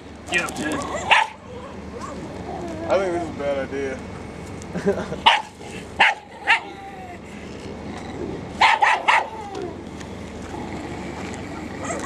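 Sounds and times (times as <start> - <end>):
steady background noise: 0.0 - 12.0
dog barking: 0.7 - 2.2, 5.2 - 7.1, 8.6 - 9.6.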